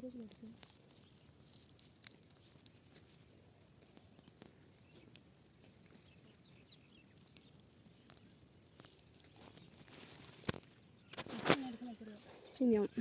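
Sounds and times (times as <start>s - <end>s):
poultry chirping: 4.0s - 9.8s.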